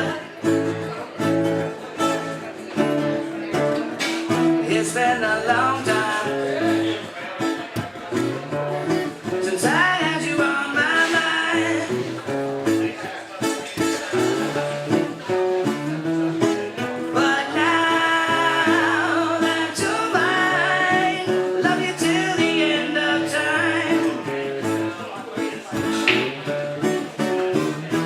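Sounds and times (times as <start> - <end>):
person singing: 0.0 - 0.9, 4.3 - 7.1, 8.8 - 12.9, 16.7 - 26.0
acoustic guitar strumming: 0.0 - 28.0.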